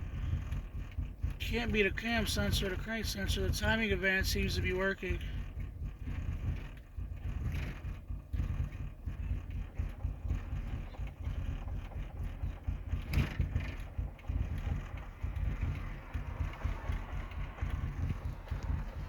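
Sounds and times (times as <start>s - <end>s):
car engine idling rough: 0.0s - 19.0s.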